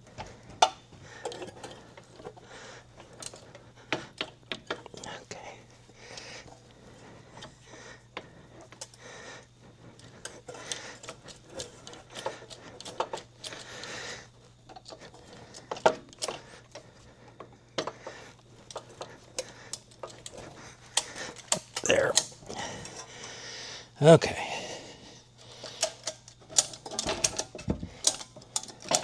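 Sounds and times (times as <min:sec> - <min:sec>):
metal tools clicking and scraping: 0:00.6 - 0:02.4, 0:03.0 - 0:05.1, 0:10.0 - 0:13.7, 0:14.7 - 0:16.8, 0:17.8 - 0:23.2, 0:25.4 - 0:29.0.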